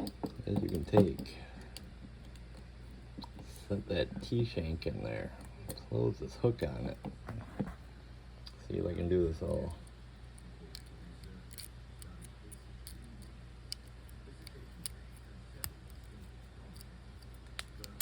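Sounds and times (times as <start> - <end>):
faint metal clicks and taps: 0.0 - 3.4
steady low hum: 0.0 - 18.0.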